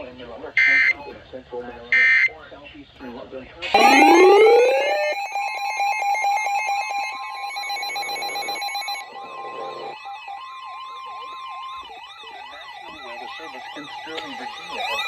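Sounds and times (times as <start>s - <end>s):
rapidly pulsing alarm tone: 3.7s - 15.0s
siren wailing up and down: 3.7s - 15.0s
steady electronic tone: 3.7s - 15.0s.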